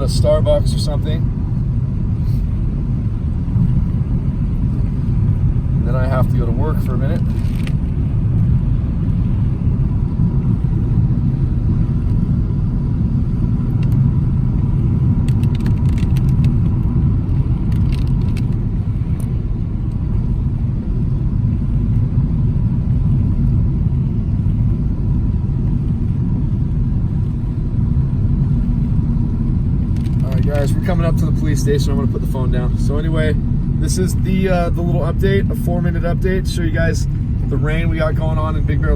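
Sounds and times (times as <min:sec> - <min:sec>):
car driving on wet road: 0:00.0 - 0:38.9.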